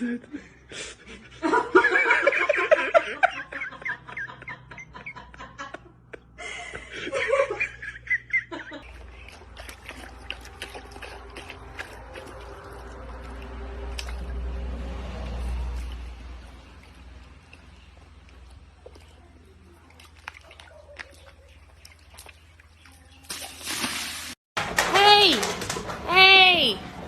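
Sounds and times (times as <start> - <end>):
person laughing: 0.0 - 9.2.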